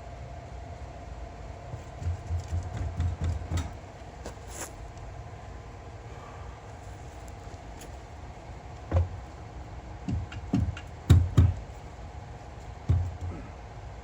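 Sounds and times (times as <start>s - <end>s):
dull knocks of metal housing: 8.9s - 9.2s, 10.0s - 11.7s, 12.8s - 13.4s.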